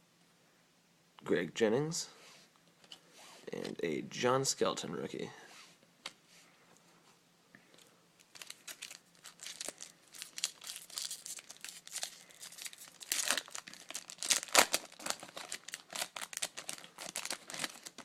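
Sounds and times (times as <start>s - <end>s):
foil wrapper tearing and crinkling: 8.2s - 18.0s.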